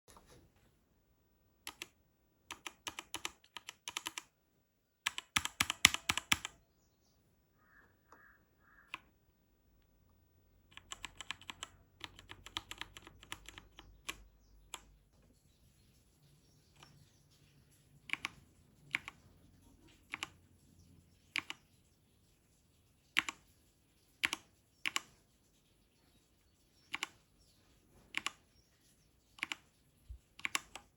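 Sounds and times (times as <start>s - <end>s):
clicky keyboard keystrokes: 1.6s - 4.3s, 5.1s - 6.6s.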